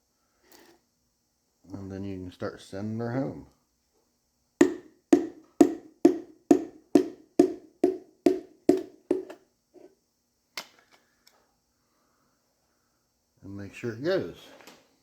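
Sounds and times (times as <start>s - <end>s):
piston tapped into cylinder: 4.6s - 9.4s.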